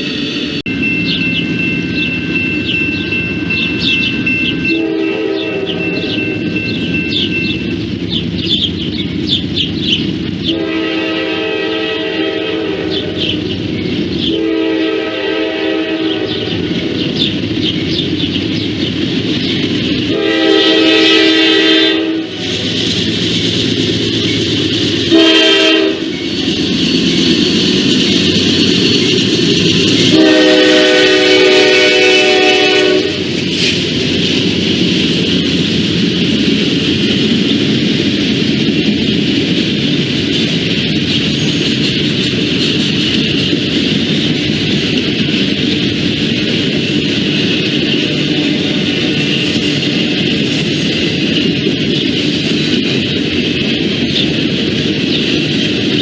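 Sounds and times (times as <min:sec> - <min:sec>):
repeated high ringing: 0:00.0 - 0:08.0
train cars rumbling: 0:00.0 - 0:56.0
locomotive air horn: 0:04.7 - 0:06.4, 0:10.5 - 0:13.4, 0:14.3 - 0:16.6, 0:20.1 - 0:22.4, 0:25.1 - 0:26.1, 0:30.1 - 0:33.3.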